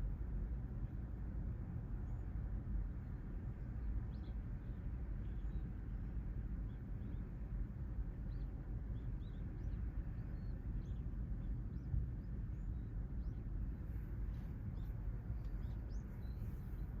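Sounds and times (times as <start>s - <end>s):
low rumble of surf: 0.0s - 17.0s
small birds chirping: 8.1s - 17.0s.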